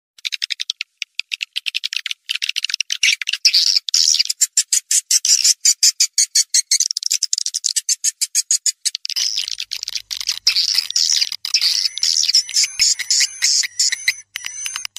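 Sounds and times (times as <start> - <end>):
swiftlet twittering chirps: 7.8 - 14.9.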